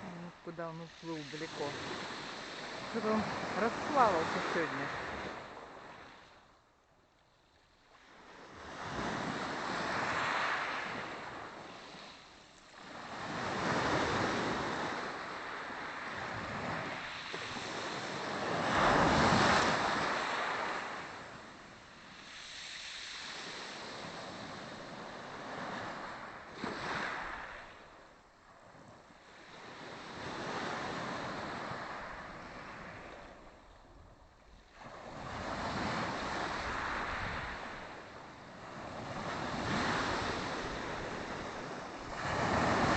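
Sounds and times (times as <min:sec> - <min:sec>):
small waves breaking on shore: 0:00.0 - 0:06.7, 0:07.3 - 0:42.9.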